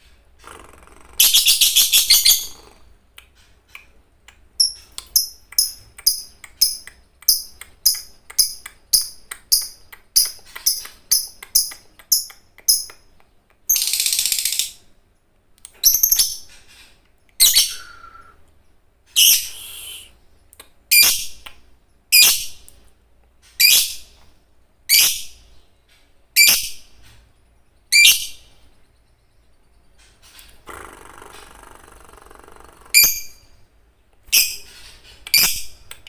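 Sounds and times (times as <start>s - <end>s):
lovebird chirps and chattering trill: 0.4s - 14.8s, 15.7s - 18.2s, 19.1s - 21.5s, 26.4s - 27.0s, 27.9s - 33.6s, 34.2s - 36.0s
lovebird shrill screeches: 17.4s - 18.4s.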